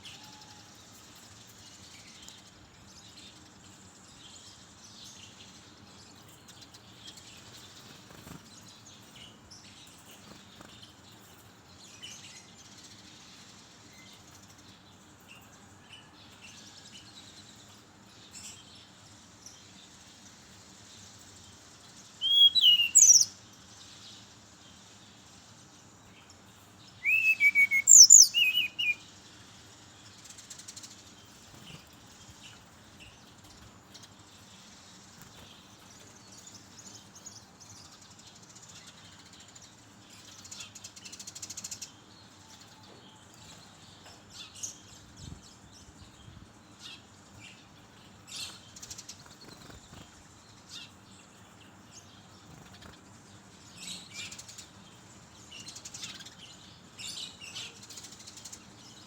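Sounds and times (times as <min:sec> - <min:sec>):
bird singing whistled notes: 0:22.2 - 0:23.4, 0:27.0 - 0:29.1
faint high twittering: 0:22.2 - 0:23.4, 0:27.0 - 0:29.4.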